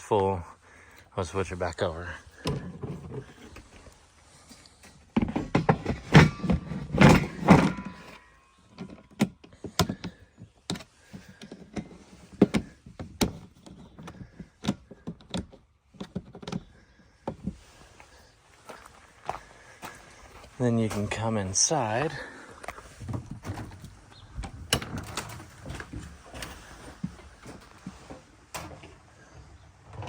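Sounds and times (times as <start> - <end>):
plastic cover clattering and scraping: 2.4 - 4.0, 4.9 - 16.6.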